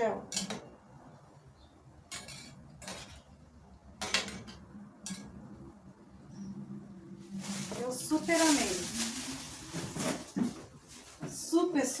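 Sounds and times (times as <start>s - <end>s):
handling rustle and clatter: 7.3s - 11.7s.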